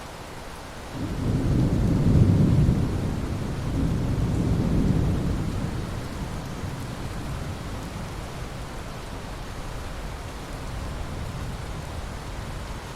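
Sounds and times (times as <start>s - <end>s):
steady rain: 0.0s - 12.9s
thunder rolling: 1.0s - 8.2s.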